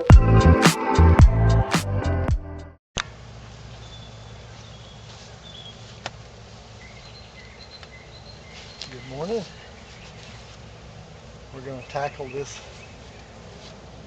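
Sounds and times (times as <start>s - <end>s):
electronic intro music: 0.0s - 2.8s
small birds chirping: 3.8s - 10.7s, 11.4s - 13.4s.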